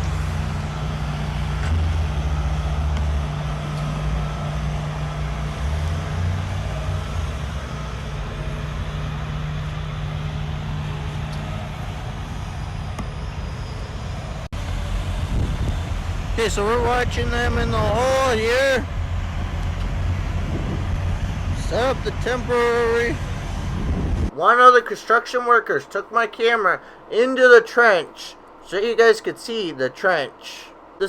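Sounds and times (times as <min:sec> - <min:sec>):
diesel machinery engine hum: 0:00.0 - 0:24.6.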